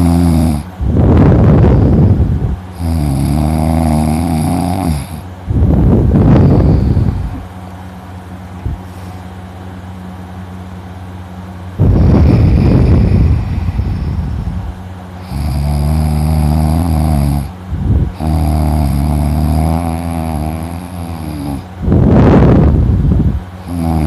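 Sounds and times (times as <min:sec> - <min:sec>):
man snoring loudly: 0:00.0 - 0:00.7, 0:02.7 - 0:05.3, 0:11.8 - 0:14.4, 0:15.2 - 0:21.7, 0:23.6 - 0:24.0.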